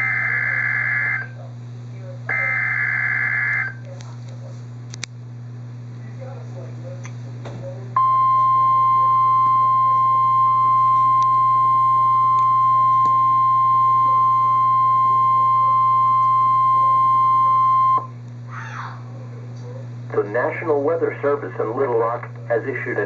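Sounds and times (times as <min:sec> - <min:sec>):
low steady hum: 0:00.0 - 0:23.0
loud steady high beep: 0:08.0 - 0:18.1.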